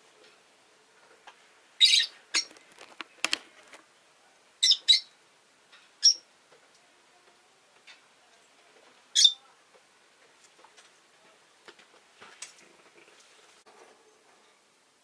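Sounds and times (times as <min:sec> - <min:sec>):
lovebirds chirping: 0:01.8 - 0:02.6, 0:04.6 - 0:06.3, 0:07.9 - 0:09.5
small clicks: 0:02.5 - 0:03.8.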